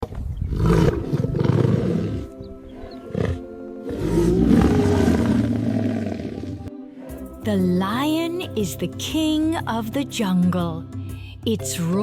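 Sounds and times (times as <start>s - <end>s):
lion roaring: 0.5s - 6.7s
background music: 0.6s - 12.0s.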